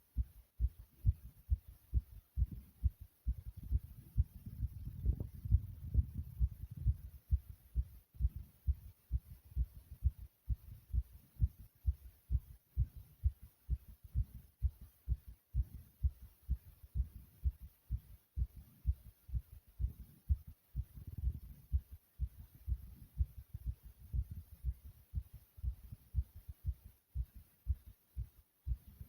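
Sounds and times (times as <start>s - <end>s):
fast heartbeat thumps: 0.0s - 29.0s.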